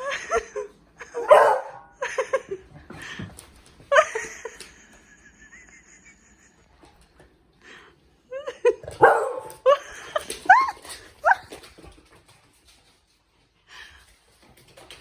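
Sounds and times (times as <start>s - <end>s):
dog yipping and barking: 9.0s - 9.5s.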